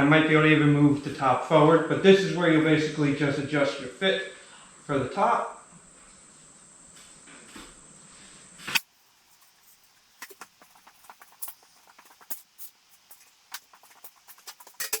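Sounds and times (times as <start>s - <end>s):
light clicks and scratches: 8.7s - 15.0s.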